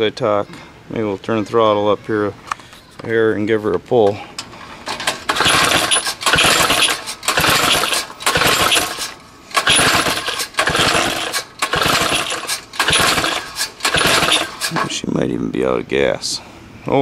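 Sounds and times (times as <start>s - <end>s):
small engine cranking with rattling whirr: 5.1s - 15.0s.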